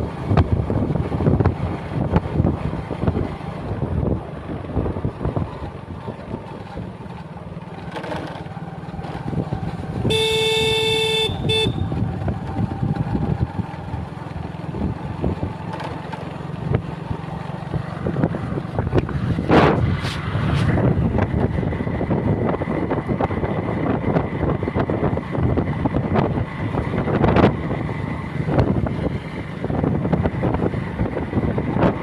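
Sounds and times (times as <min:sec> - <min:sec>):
wind noise: 0:00.0 - 0:06.9, 0:09.1 - 0:14.0, 0:16.6 - 0:32.0
road traffic: 0:00.0 - 0:32.0
vehicle horn honking: 0:10.0 - 0:12.0.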